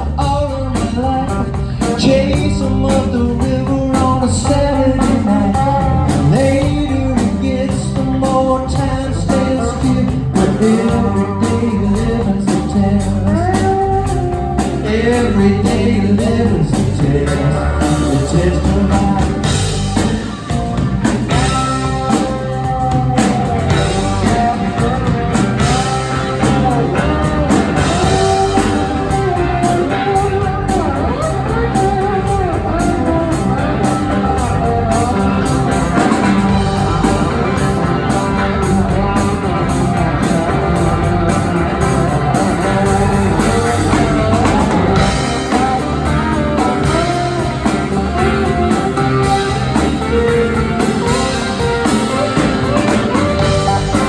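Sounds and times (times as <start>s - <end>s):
bass guitar: 0.0s - 54.0s
drum kit: 0.0s - 54.0s
electric guitar solo: 19.4s - 54.0s.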